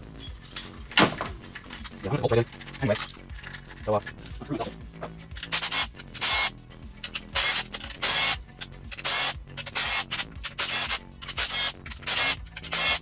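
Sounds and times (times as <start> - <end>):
ratchet wrench clicking: 4.7 - 13.0.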